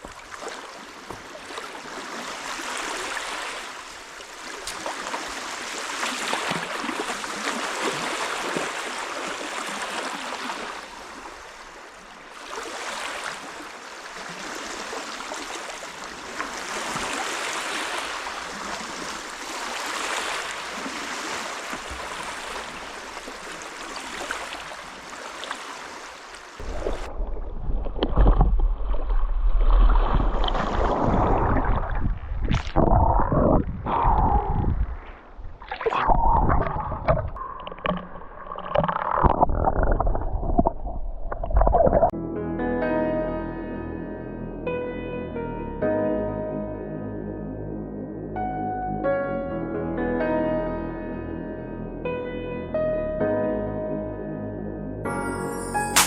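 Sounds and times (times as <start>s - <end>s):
water rushing and splashing: 0.0s - 42.2s
low rumbling noise: 31.0s - 42.1s.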